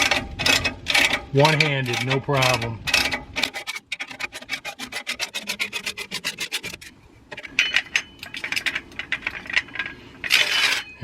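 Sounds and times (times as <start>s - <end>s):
faint metallic squeak: 6.8s - 11.0s.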